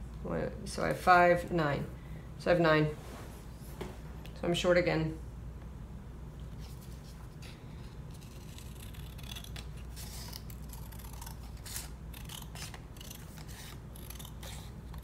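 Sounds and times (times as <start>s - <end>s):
scissors snipping paper: 8.1s - 15.0s.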